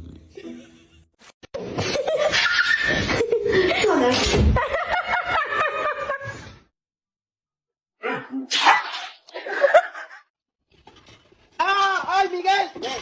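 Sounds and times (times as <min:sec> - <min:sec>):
people laughing: 0:01.6 - 0:06.5, 0:09.4 - 0:10.2.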